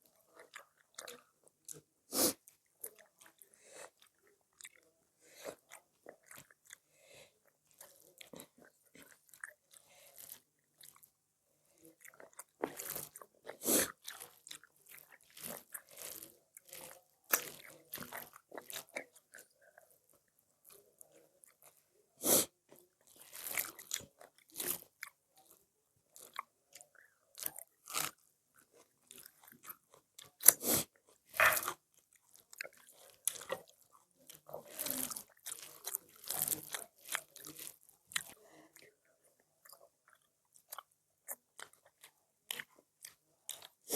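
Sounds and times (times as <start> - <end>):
crisp chewing crunches: 7.6 - 11.1, 11.8 - 21.8, 23.0 - 43.9.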